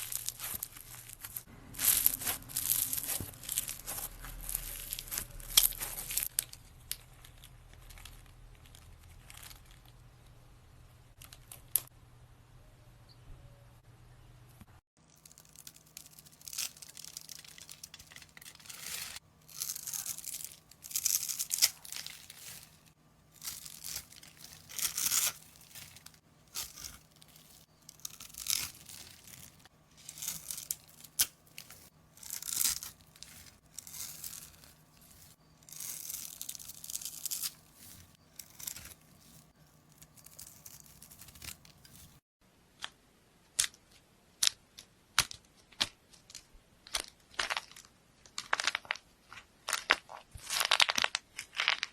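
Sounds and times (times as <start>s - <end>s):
material tearing and crackling: 0.0s - 6.6s, 15.2s - 42.2s.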